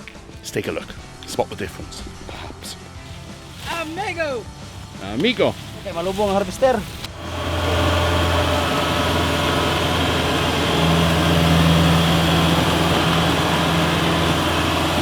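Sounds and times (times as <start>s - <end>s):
harvester engine drone: 6.0s - 15.0s
higher steady hum: 6.5s - 15.0s.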